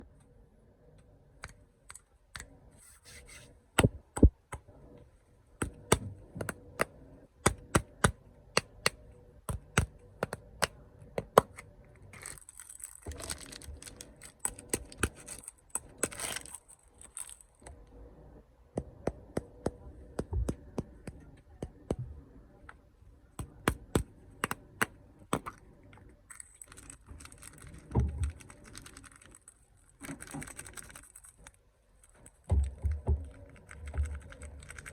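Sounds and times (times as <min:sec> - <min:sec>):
plastic wrapper crinkling: 0:12.1 - 0:17.6, 0:26.3 - 0:32.3.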